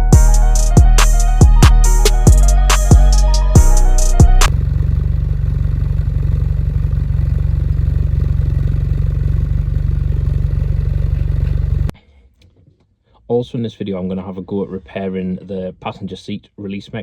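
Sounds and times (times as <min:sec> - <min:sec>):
car engine running with misfire: 0:04.5 - 0:12.0.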